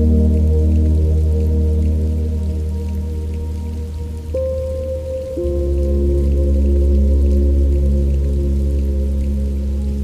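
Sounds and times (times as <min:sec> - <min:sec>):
faint rain pattering: 0:00.0 - 0:10.0
deep drone chord: 0:04.4 - 0:10.0.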